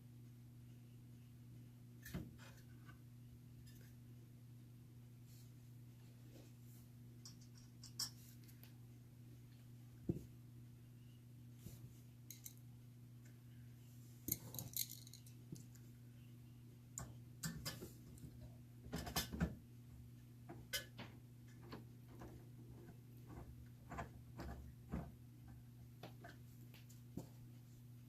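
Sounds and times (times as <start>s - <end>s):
tools clicking and clinking: 14.3s - 15.4s.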